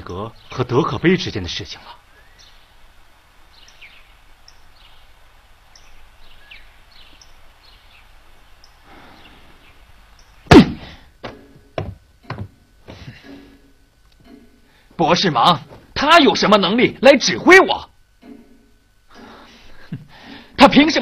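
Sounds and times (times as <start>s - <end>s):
faint bird chirps: 0.0s - 11.0s
loud heavy thunk: 10.5s - 12.5s
sharp knocks: 10.5s - 13.1s.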